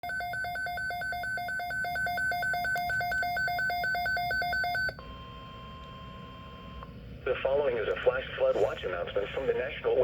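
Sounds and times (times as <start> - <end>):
fast two-tone alarm beeping: 0.0 - 6.8.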